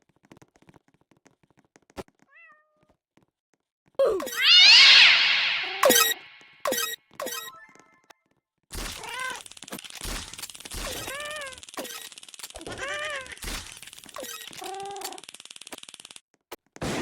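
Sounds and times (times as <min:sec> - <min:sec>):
cat meowing: 0:04.0 - 0:06.4.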